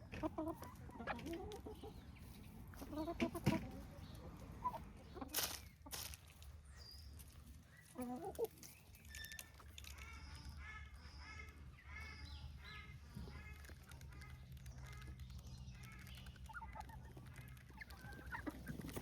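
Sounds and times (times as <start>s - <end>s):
chickens clucking: 0.0s - 19.0s
rustling scuffling noise: 5.3s - 6.4s.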